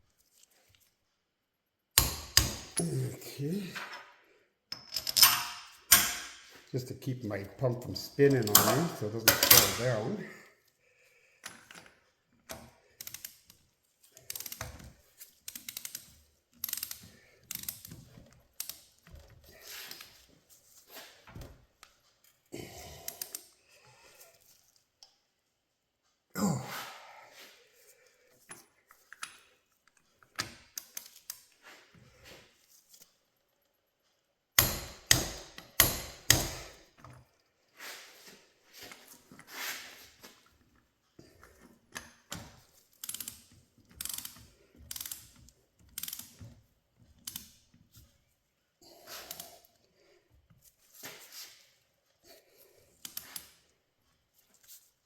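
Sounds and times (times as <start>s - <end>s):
wrench and metal parts clinking: 4.7s - 6.4s, 8.2s - 10.0s, 14.2s - 14.8s, 15.5s - 18.8s.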